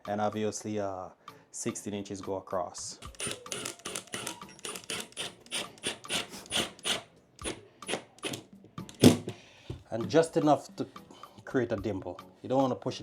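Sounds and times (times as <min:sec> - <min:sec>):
screws driven clicking: 0:03.0 - 0:09.4.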